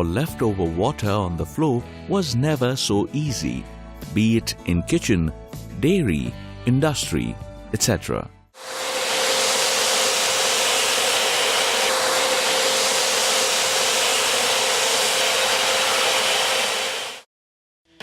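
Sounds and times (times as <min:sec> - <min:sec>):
vacuum cleaner running: 0:08.6 - 0:17.3.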